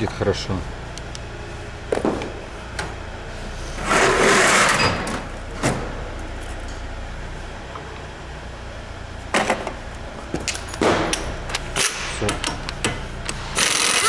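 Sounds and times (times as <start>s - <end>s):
steady low hum: 0.0s - 14.0s
rasping tool burst: 13.5s - 14.0s.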